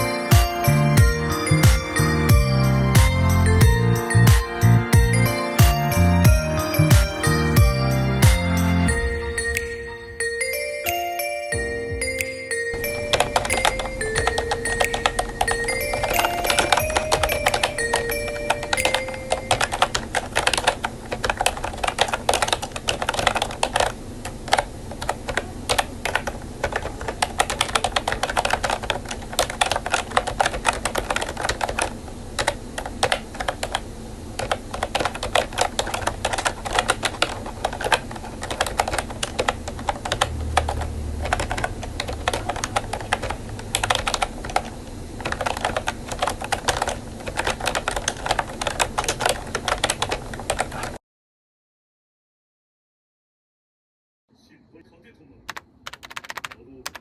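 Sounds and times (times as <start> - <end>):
keyboard typing: 10.4 - 20.8, 55.5 - 57.0.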